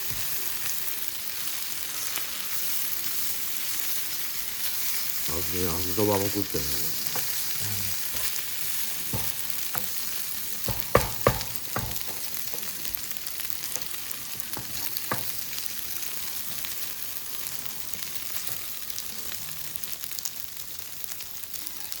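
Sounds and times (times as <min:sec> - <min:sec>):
noodles sizzling in a pan: 0:00.0 - 0:22.0
utensil clacking on metal pan: 0:07.0 - 0:07.4, 0:08.2 - 0:08.4, 0:09.2 - 0:12.6, 0:13.7 - 0:15.5.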